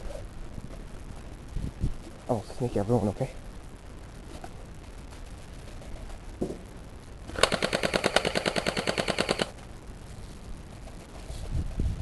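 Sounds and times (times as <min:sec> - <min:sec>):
airsoft gun full-auto burst: 0:07.3 - 0:09.6.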